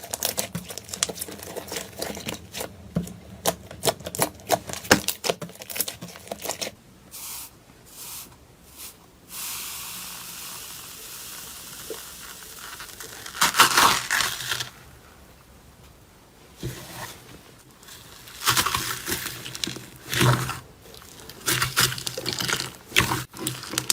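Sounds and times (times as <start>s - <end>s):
slime hissing: 7.2s - 14.7s
slime crackling: 11.4s - 14.8s, 17.8s - 23.9s.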